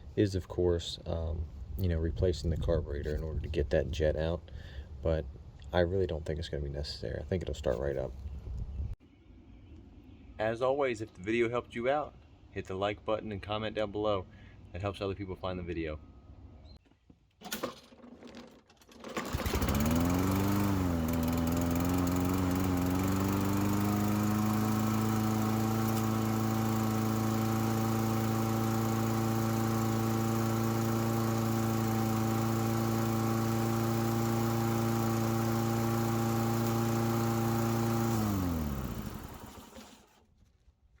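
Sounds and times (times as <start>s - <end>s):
lawn mower engine running: 17.5s - 40.2s.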